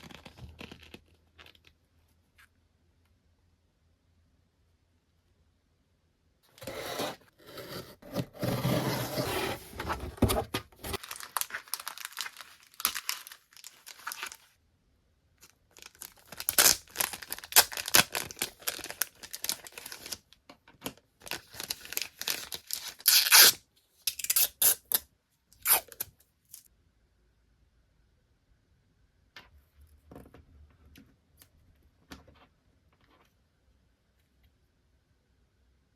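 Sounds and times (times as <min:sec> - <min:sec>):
packaging tearing and crinkling: 0:10.7 - 0:14.4, 0:15.8 - 0:20.2.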